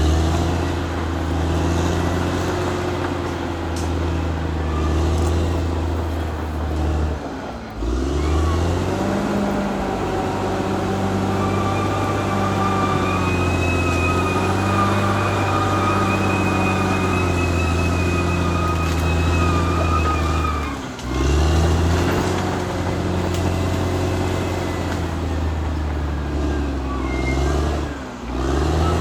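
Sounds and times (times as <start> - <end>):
bulldozer diesel engine running: 0.0 - 29.0.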